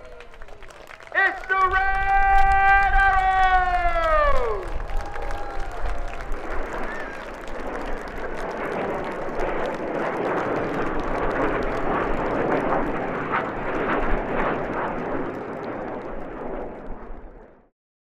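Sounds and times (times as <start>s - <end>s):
crowd applauding: 0.0s - 13.8s.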